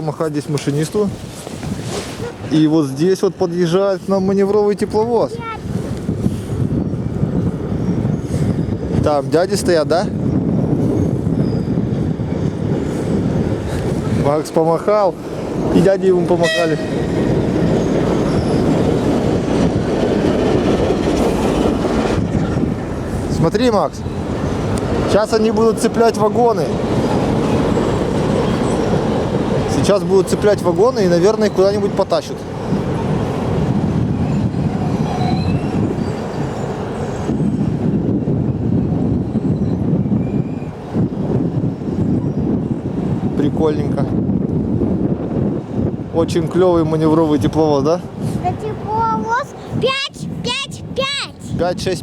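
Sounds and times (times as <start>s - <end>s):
steel wheels rumbling on rails: 0.0s - 52.0s
wheel squeals: 7.7s - 9.1s, 10.9s - 13.2s, 17.6s - 19.1s, 34.2s - 37.6s, 38.8s - 42.5s
diesel locomotive engine running: 12.6s - 35.0s.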